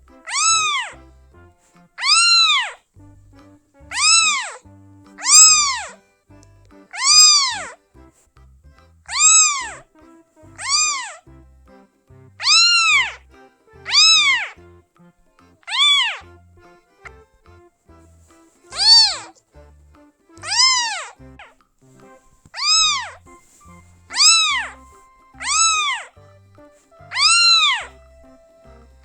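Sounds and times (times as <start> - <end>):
kitten meowing: 0.3 - 1.0, 2.0 - 2.8, 3.9 - 6.0, 7.0 - 7.8, 9.1 - 9.8, 10.6 - 11.2, 12.4 - 13.2, 13.8 - 14.6, 15.6 - 16.4, 18.7 - 19.3, 22.5 - 26.2, 27.1 - 27.9.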